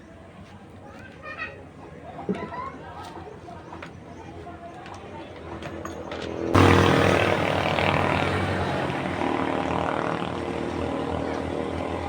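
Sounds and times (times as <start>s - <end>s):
motor running loudly: 6.6s - 12.0s.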